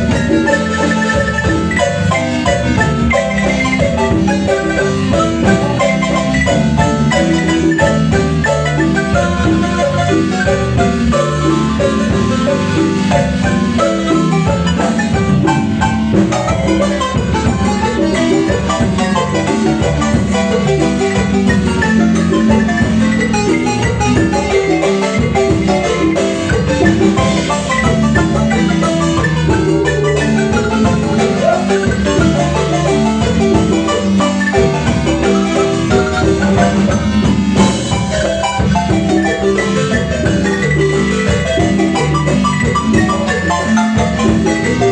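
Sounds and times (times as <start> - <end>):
marimba ensemble playing: 0.0 - 44.9.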